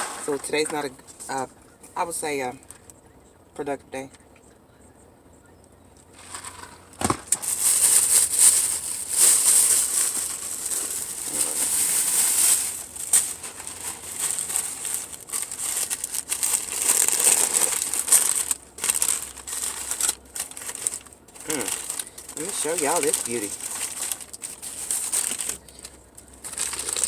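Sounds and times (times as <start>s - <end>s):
crinkling food wrapping: 6.1s - 27.0s.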